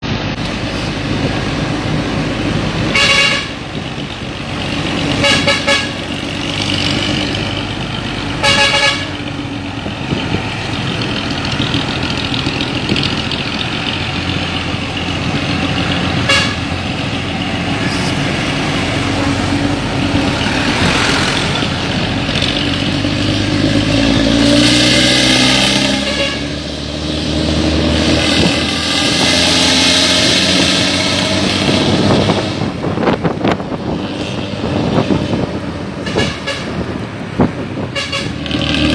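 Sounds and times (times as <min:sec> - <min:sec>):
bus engine with raspy exhaust: 0:00.0 - 0:38.9
horn tooting: 0:00.4 - 0:13.0, 0:15.0 - 0:26.8, 0:35.9 - 0:37.0, 0:37.7 - 0:38.9.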